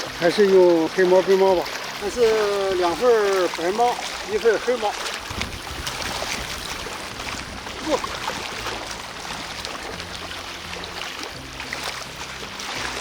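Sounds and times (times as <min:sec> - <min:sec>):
choppy water at shore: 0:00.0 - 0:13.0
strong wind: 0:05.2 - 0:08.9.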